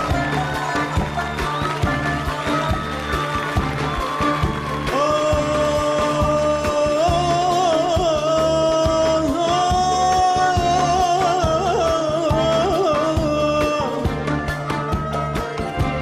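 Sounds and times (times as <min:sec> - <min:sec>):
band accompaniment: 0:00.0 - 0:16.0
steady drum beat: 0:00.0 - 0:16.0.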